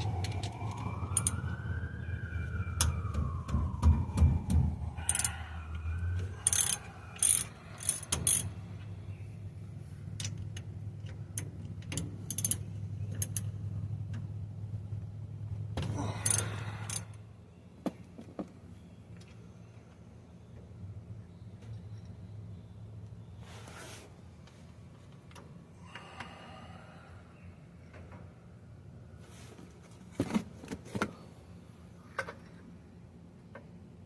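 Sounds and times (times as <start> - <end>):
ratchet clicks: 6.4 - 8.5, 11.4 - 13.5.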